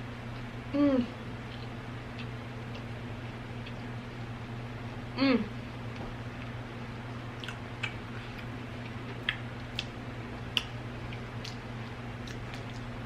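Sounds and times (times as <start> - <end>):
low electrical hum: 0.0 - 13.0
wet mouth clicks chewing: 7.4 - 12.9.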